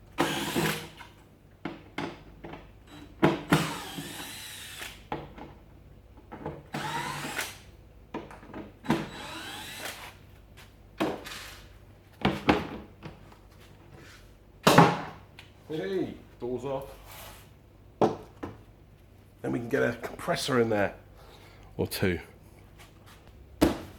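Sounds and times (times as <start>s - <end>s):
power drill whirring: 0.2s - 1.0s, 2.9s - 5.0s, 6.7s - 7.6s, 8.8s - 10.2s.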